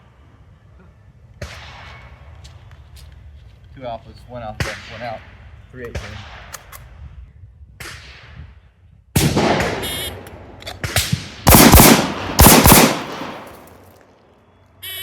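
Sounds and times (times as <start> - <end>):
gunshots with echo: 9.2 - 10.2, 10.8 - 13.9.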